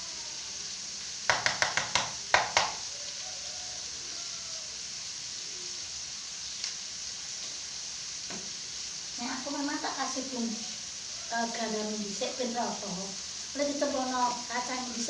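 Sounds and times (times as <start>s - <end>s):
oil sizzling in a pan: 0.0s - 15.0s
sharp taps: 1.3s - 2.8s.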